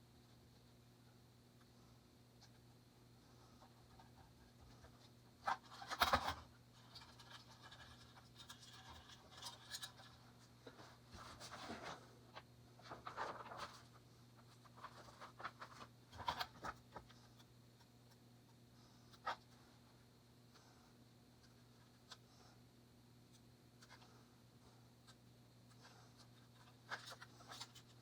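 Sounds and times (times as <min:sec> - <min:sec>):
faint steady hum: 0:00.0 - 0:28.0
scrapes and clicks of handling: 0:03.4 - 0:19.9, 0:23.3 - 0:24.3, 0:25.0 - 0:28.0.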